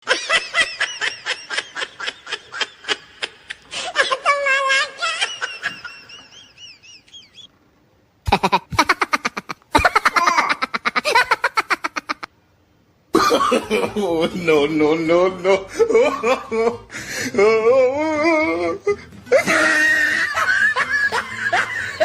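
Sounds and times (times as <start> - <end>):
bursts of laughter: 8.2 - 12.3, 19.3 - 22.0.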